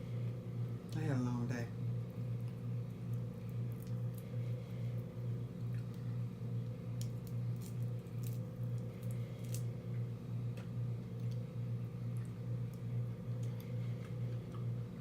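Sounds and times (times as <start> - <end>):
pulsing low hum: 0.0 - 15.0
person chewing and smacking: 2.4 - 4.4.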